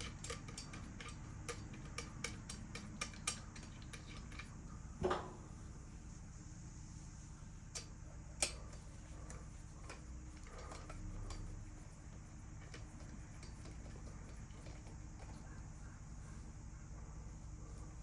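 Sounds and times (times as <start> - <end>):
tool clicking on metal: 0.0 - 4.5
faint steady hum: 0.0 - 18.0.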